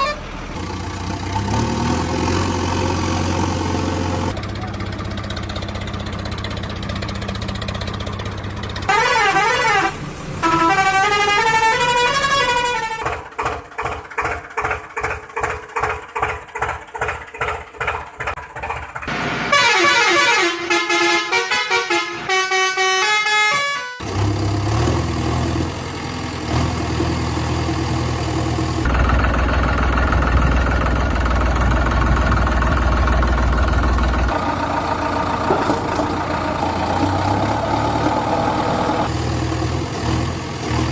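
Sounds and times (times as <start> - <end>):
warbling vehicle horns: 0.0 - 0.3, 8.9 - 13.3, 19.4 - 24.1
heavy vehicle engines running: 0.0 - 40.9
pulsing horn blasts: 8.9 - 13.2, 19.4 - 24.1.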